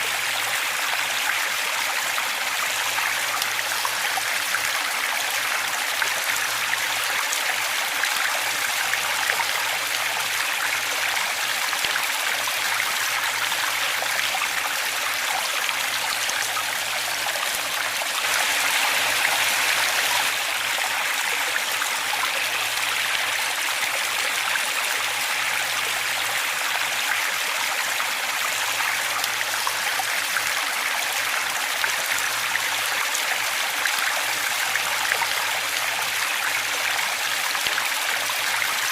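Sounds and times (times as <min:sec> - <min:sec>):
waterfall rushing: 0:16.0 - 0:24.8.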